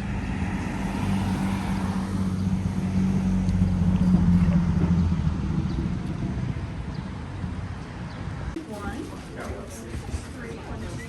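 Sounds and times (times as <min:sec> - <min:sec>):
vehicle engine droning: 0:00.0 - 0:08.6.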